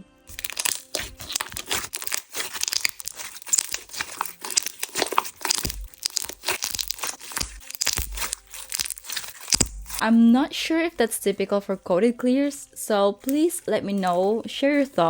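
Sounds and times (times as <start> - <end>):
sticky slime crackling and popping: 0.3 - 10.1.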